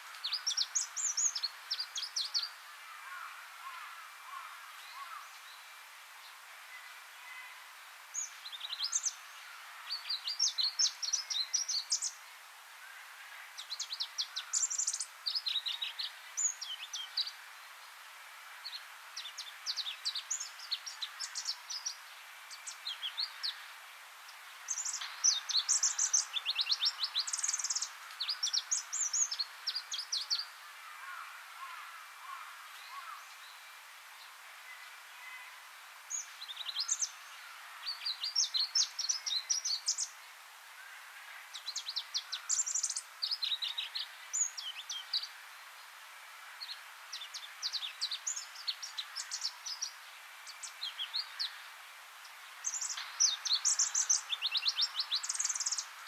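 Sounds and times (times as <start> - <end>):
warbler singing trills: 0.0 - 3.8, 8.1 - 12.2, 13.6 - 17.4, 18.6 - 23.7, 24.3 - 33.6, 36.1 - 40.2, 41.5 - 45.4, 46.6 - 51.6, 52.3 - 56.0.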